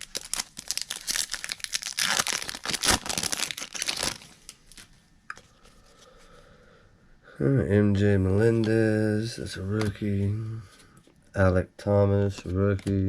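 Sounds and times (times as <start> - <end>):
wrapper crinkling and tearing: 0.0 - 5.0.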